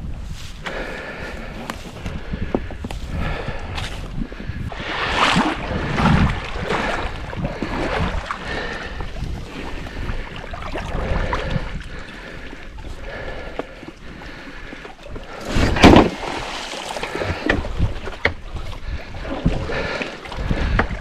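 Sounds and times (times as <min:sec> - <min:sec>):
water sloshing and splashing: 0:00.3 - 0:21.0
knocks of dock sections: 0:13.2 - 0:21.0.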